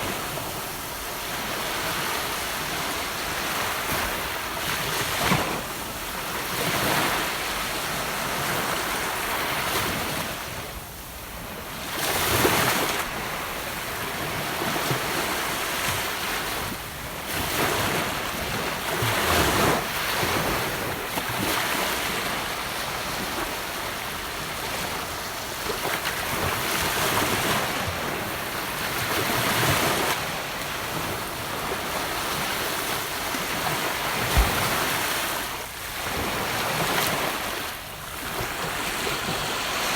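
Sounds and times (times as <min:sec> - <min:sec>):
ocean waves breaking on beach: 0:00.0 - 0:39.9.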